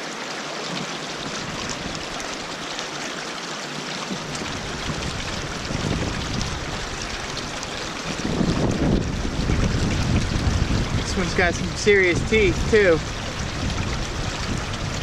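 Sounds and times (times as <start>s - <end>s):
mountain stream rushing: 0.0s - 15.0s
low microphone rumble: 4.1s - 15.0s.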